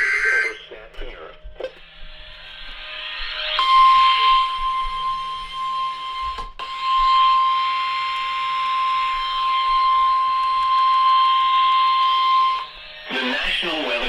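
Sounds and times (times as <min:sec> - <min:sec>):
radio hiss: 0:00.0 - 0:05.8, 0:12.6 - 0:14.0
high-pitched alarm tone: 0:01.4 - 0:14.0.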